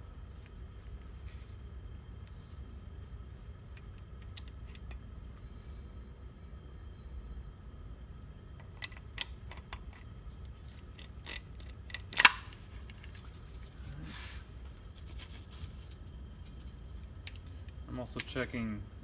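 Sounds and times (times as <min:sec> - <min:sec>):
light clicks of metal parts: 0:03.7 - 0:05.1, 0:16.4 - 0:18.8.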